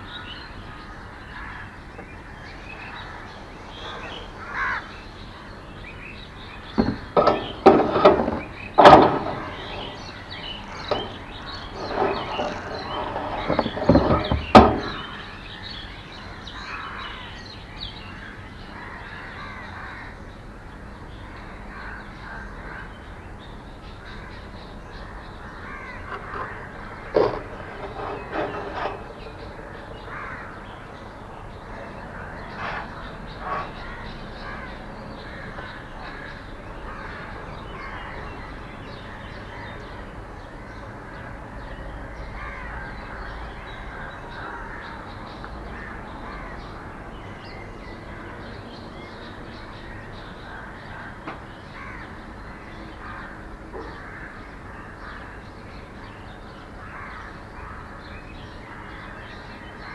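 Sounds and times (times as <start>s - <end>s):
small birds chirping: 0.0s - 59.9s
crows cawing: 0.7s - 5.4s, 18.2s - 20.2s, 25.4s - 27.9s, 30.0s - 30.8s, 42.4s - 45.0s, 49.9s - 55.4s.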